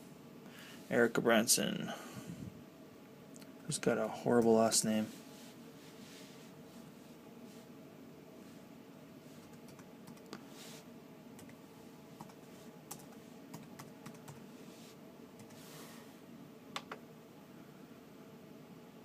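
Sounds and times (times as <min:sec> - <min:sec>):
steady low hum: 0:00.0 - 0:19.0
computer keyboard key presses: 0:16.8 - 0:17.0.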